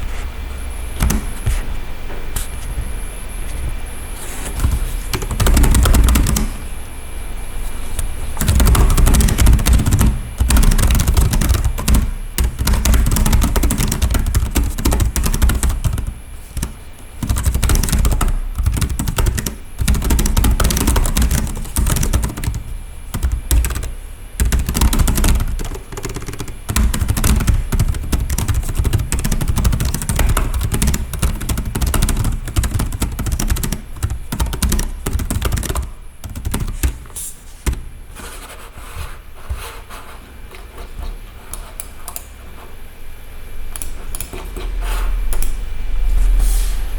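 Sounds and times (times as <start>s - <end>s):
laptop keyboard typing: 0.9s - 1.6s, 4.2s - 6.8s, 7.9s - 38.7s, 40.8s - 42.3s.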